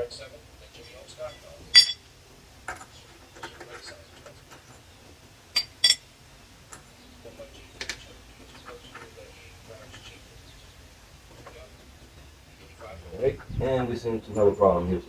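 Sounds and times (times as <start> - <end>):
sharp ringing metal clinks: 0.9 - 2.1, 5.6 - 6.1.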